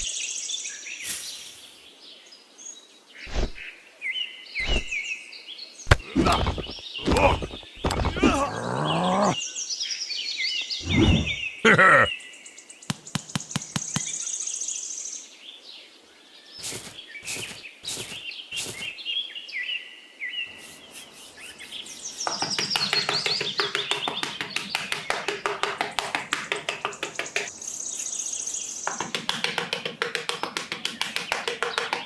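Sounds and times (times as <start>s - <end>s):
bird-like chirping: 20.4s - 32.0s
loud knocks: 21.9s - 27.6s, 28.8s - 32.0s.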